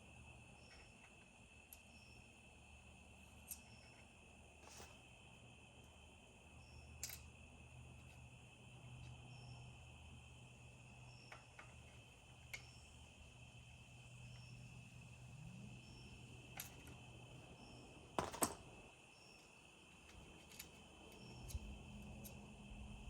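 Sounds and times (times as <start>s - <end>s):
insect chirring: 0.2s - 23.0s
clicks of tools being handled: 7.0s - 7.3s.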